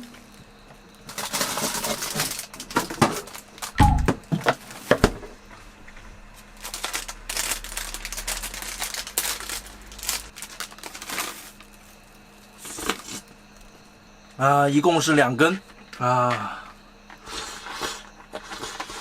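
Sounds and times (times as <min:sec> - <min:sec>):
plastic wrapper crinkling: 0:06.6 - 0:11.8.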